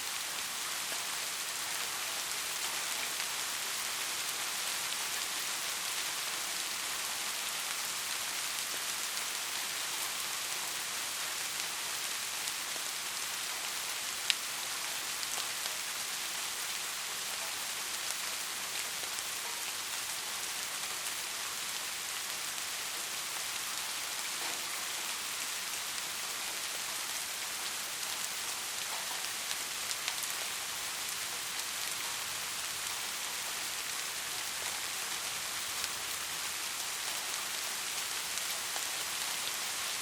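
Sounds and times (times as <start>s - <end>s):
steady rain hiss: 0.0s - 40.0s.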